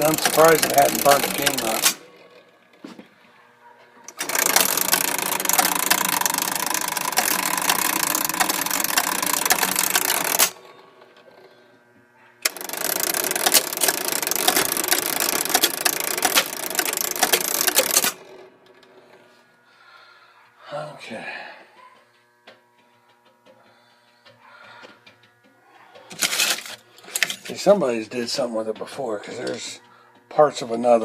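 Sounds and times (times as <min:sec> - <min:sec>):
pinball machine motor rattling: 0:00.0 - 0:19.7, 0:22.6 - 0:31.0.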